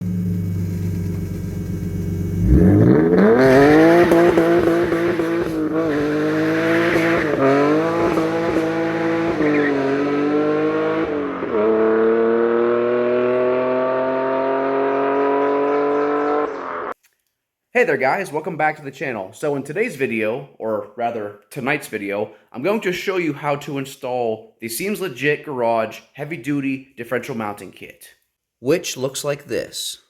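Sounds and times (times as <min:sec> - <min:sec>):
car engine revving hard: 0:02.3 - 0:16.9.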